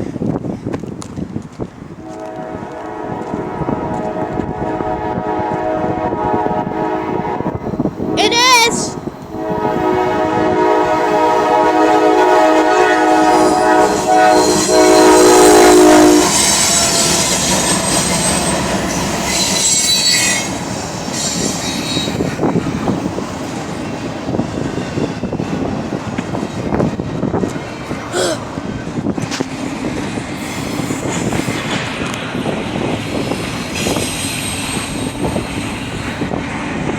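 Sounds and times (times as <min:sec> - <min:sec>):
locomotive air horn: 0:02.0 - 0:18.1
rail clatter: 0:12.6 - 0:36.9
train wheel squeal: 0:13.1 - 0:22.7, 0:32.9 - 0:36.2.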